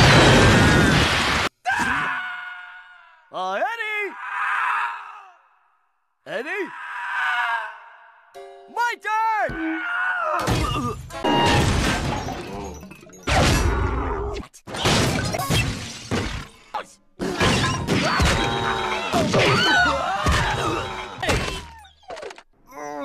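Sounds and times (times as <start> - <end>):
cartoon crash and shattering: 0.0 - 1.5, 10.4 - 13.9, 14.7 - 16.6, 17.2 - 21.8.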